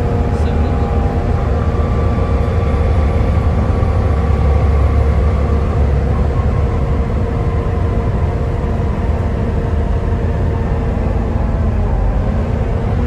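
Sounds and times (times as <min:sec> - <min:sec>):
bus engine rumble: 0:00.0 - 0:13.0
engine whine: 0:00.0 - 0:13.0.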